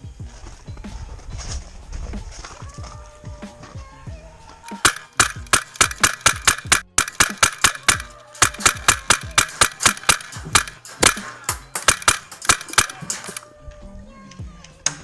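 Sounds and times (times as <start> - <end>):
airsoft gun firing rapid shots: 4.7 - 13.5.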